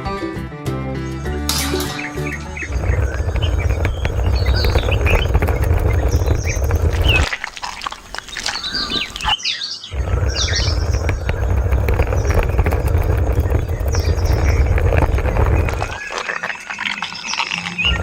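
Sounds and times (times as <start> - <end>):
small birds chirping: 1.0 - 18.0
low rumble: 2.3 - 7.3, 10.0 - 16.3.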